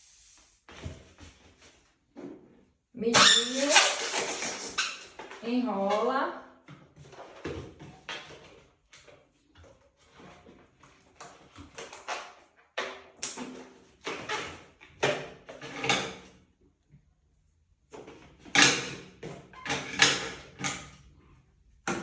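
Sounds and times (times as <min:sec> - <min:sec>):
balloons squeaking: 0:03.2 - 0:05.0.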